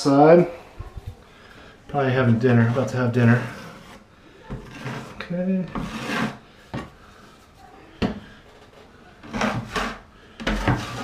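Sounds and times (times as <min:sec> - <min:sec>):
drywall knife scraping compound: 0:02.0 - 0:07.3, 0:08.0 - 0:11.0.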